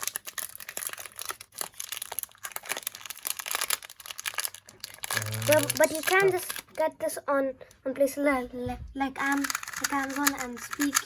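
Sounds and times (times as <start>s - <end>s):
plastic wrapping crinkling: 0.0s - 6.8s, 9.2s - 11.0s.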